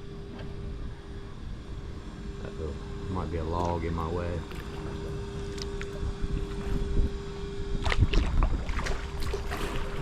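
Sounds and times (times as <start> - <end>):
steady hum: 0.0 - 10.0
wind buffeting microphone: 4.9 - 10.0
paddle strokes splashing water: 7.8 - 10.0.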